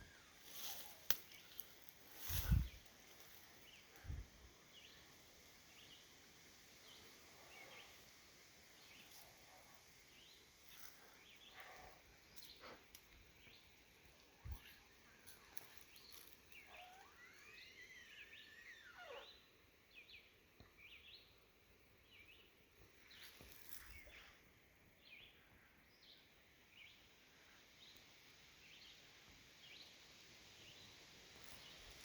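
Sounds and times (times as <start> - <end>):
animal calling in a tree: 15.4 - 19.5.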